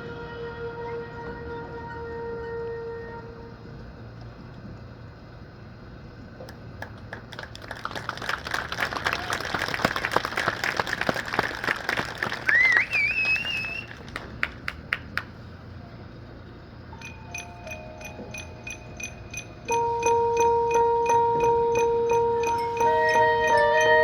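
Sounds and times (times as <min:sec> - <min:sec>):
audience applauding: 0:06.8 - 0:15.4
loud rising whistle: 0:12.4 - 0:14.0, 0:17.0 - 0:24.0.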